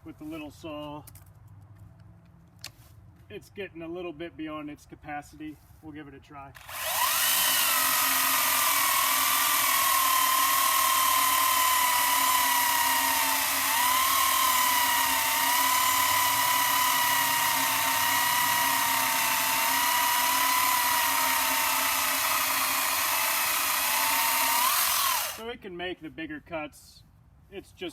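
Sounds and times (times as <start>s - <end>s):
chainsaw cutting wood: 6.6s - 25.4s.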